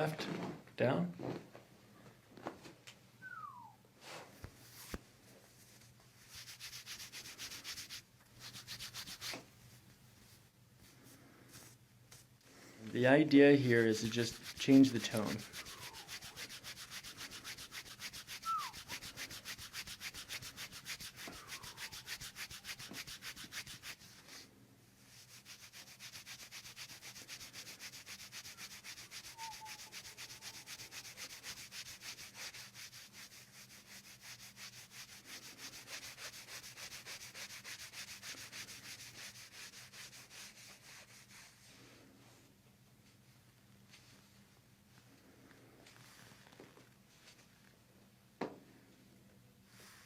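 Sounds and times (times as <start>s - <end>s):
hands rubbing over skin: 5.6s - 9.5s, 13.7s - 24.4s, 25.1s - 41.6s.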